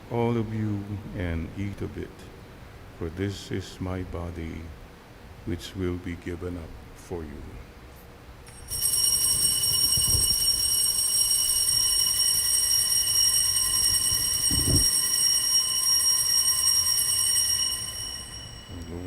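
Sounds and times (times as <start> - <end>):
altar bells ringing: 8.5 - 19.0
soft low thumps: 13.9 - 15.0.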